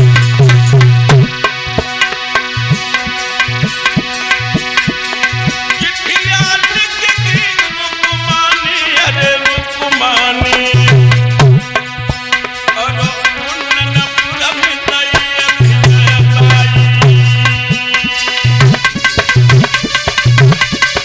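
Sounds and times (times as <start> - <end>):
held low drum note: 0.0 - 2.8
sustained chord: 0.0 - 6.1
bending melody line: 0.0 - 20.8
hand drum beat: 0.0 - 21.0.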